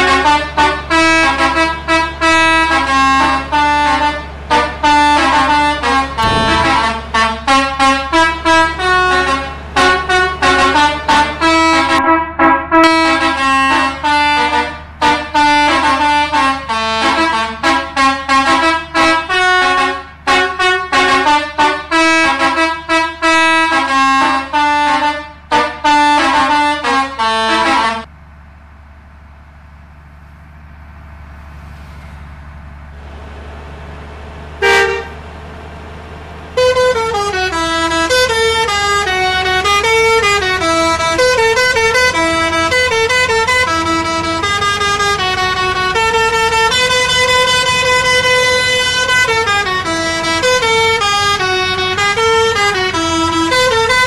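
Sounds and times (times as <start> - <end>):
tuned bus horns playing tunes: 0.0 - 28.1, 34.4 - 54.0
short horn blast: 0.1 - 9.5, 34.5 - 35.3
low steady hum: 6.2 - 7.6.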